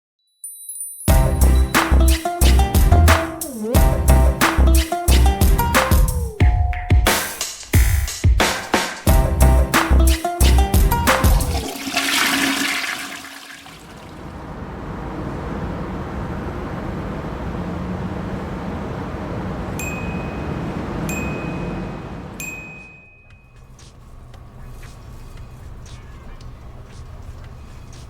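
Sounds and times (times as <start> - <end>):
rushing water-like noise: 11.4 - 14.4
short ringing dings: 19.8 - 23.6.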